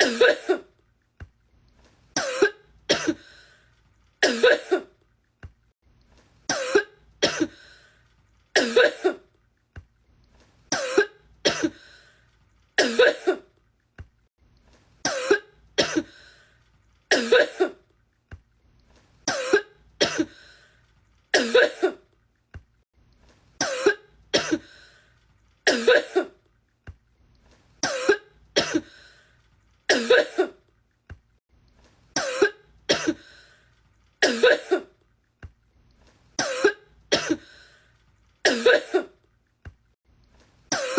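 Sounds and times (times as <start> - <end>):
woman coughing: 0.0 - 0.7, 2.2 - 3.3, 4.2 - 5.0, 6.5 - 7.6, 8.6 - 9.3, 10.7 - 11.8, 12.8 - 13.5, 15.1 - 16.2, 17.1 - 17.8, 19.3 - 20.4, 21.4 - 22.0, 23.6 - 24.7, 25.7 - 26.4, 27.8 - 28.9, 29.9 - 30.6, 32.2 - 33.3, 34.2 - 35.0, 36.4 - 37.5, 38.5 - 39.2.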